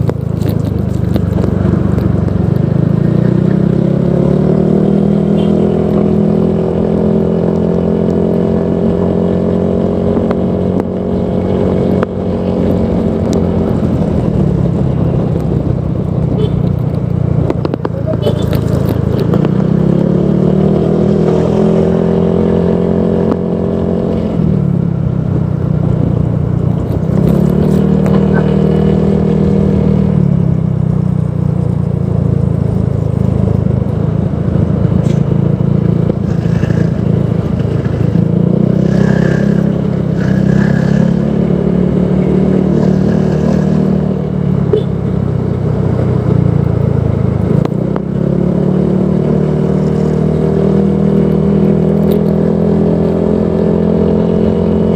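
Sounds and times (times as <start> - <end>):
scooter engine revving: 26.3 - 31.0, 34.7 - 54.9.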